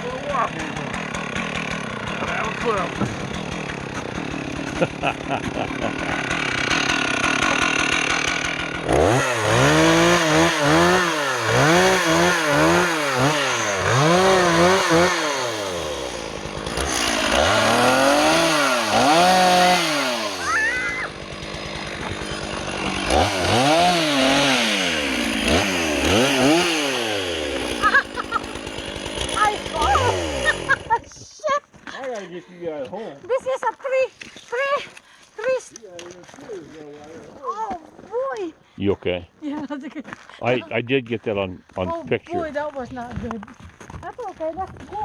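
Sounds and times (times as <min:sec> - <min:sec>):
chainsaw engine revving: 0:00.0 - 0:31.2.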